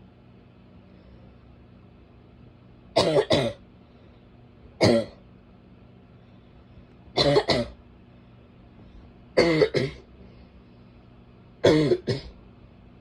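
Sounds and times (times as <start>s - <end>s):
woman barking cough: 3.0s - 3.6s, 4.8s - 5.2s, 7.2s - 7.8s, 9.4s - 10.0s, 11.6s - 12.4s.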